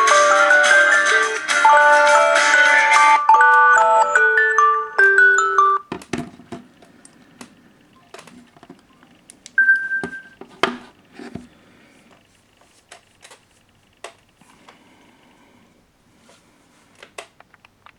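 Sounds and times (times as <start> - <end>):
short electronic beep: 9.6 - 10.4.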